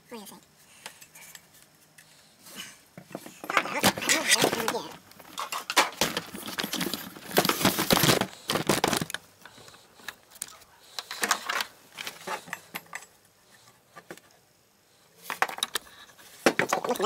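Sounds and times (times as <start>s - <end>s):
small hard objects clattering: 3.1s - 9.8s, 16.4s - 17.0s.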